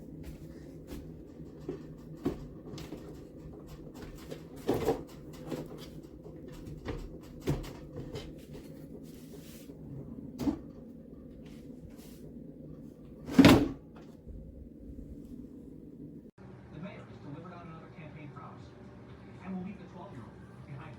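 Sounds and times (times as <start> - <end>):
low hum: 0.0 - 17.2
drawer knocks and clunks: 0.3 - 8.9, 10.3 - 10.8, 13.1 - 14.2.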